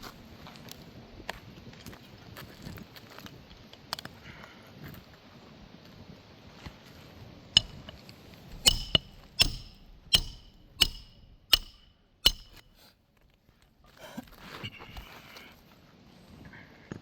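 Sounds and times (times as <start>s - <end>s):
hammer striking roofing nails: 7.6s - 7.8s, 8.6s - 12.6s.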